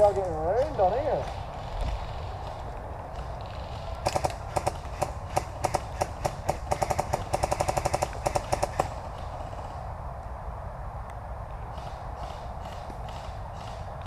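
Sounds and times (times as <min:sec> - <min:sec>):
airsoft guns firing: 0:04.0 - 0:09.0.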